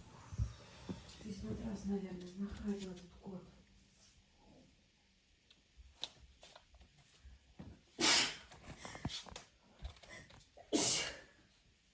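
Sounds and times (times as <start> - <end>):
loud sneeze: 8.0 - 8.5, 10.7 - 11.3.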